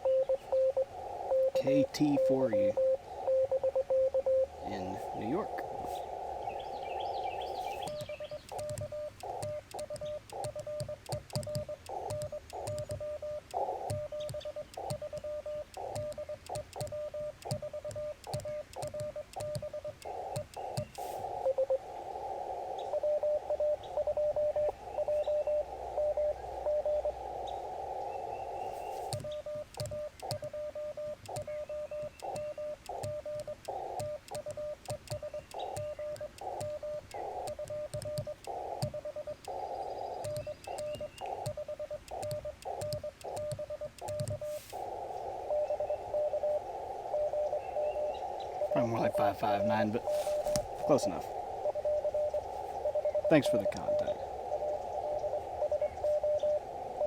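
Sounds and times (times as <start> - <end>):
morse code tone: 0.0 - 6.0, 7.6 - 21.8, 22.9 - 27.2, 29.0 - 39.4, 40.2 - 44.5, 45.5 - 56.6
receiver hiss: 0.0 - 57.0
faint clicks: 7.4 - 21.6, 28.8 - 45.3.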